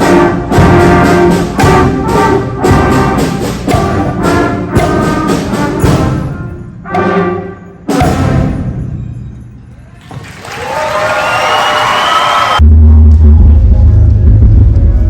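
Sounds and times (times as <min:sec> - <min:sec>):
drum hits: 0:00.0 - 0:06.4, 0:07.9 - 0:08.9
brass chords: 0:00.0 - 0:08.9.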